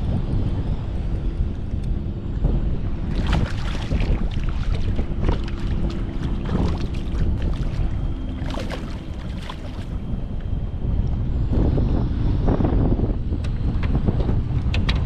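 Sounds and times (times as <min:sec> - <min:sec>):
wind buffeting microphone: 0:00.0 - 0:15.0
water splashing against kayak: 0:03.0 - 0:10.5.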